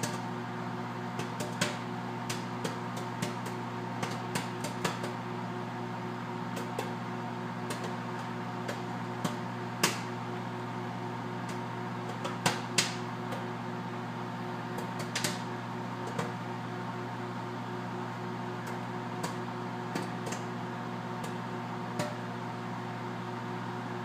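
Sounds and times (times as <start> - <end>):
popcorn kernels popping: 0.0 - 0.2, 1.1 - 5.2, 6.5 - 7.0, 7.6 - 10.2, 11.4 - 13.5, 14.7 - 16.4, 18.6 - 20.6, 21.2 - 22.3
microwave oven humming: 0.0 - 24.0.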